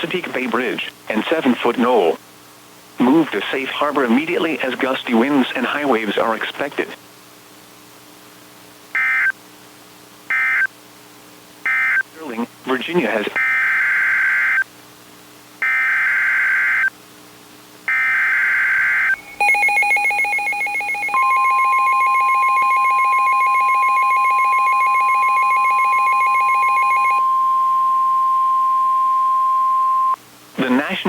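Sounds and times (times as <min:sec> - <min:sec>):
warbling data header bursts: 0:09.0 - 0:09.3, 0:10.3 - 0:10.7, 0:11.7 - 0:14.6, 0:15.6 - 0:16.9, 0:17.9 - 0:30.2
harsh two-tone attention signal: 0:17.9 - 0:30.2
steady single-tone alert tone: 0:17.9 - 0:30.2.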